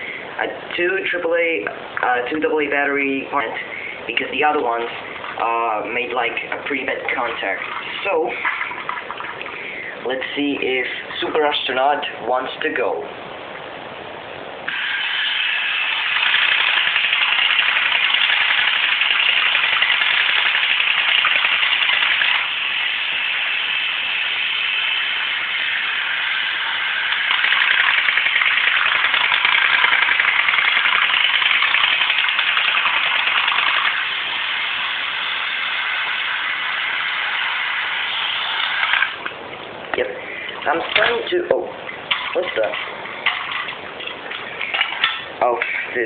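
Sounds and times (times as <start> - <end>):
toy robot motor whirring and rattling: 14.7 - 39.2.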